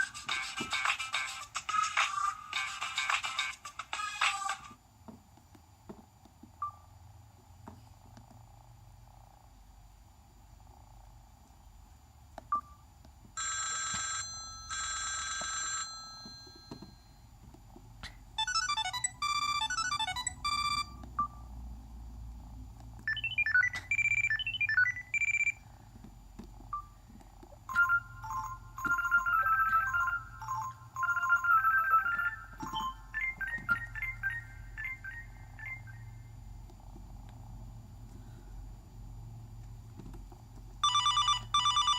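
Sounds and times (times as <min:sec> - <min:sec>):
electronic phone ring: 0:13.4 - 0:17.1, 0:18.4 - 0:21.3, 0:23.1 - 0:25.6, 0:27.7 - 0:36.2, 0:40.8 - 0:41.9
short electronic ringtone melodies: 0:18.4 - 0:20.9, 0:23.1 - 0:25.6, 0:27.7 - 0:36.2.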